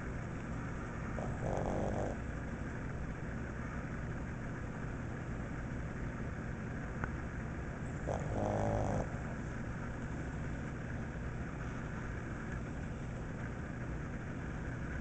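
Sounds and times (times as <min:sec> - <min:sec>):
steady low hum: 0:00.0 - 0:15.0
dog snoring: 0:01.1 - 0:02.3, 0:07.9 - 0:09.3.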